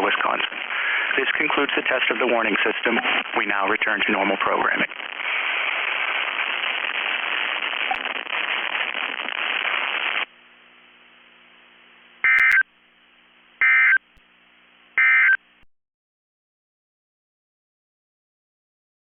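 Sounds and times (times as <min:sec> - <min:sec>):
radio hiss: 0:00.0 - 0:10.3
faint hum: 0:00.0 - 0:15.7
digital data tone bursts: 0:12.3 - 0:12.6, 0:13.6 - 0:14.0.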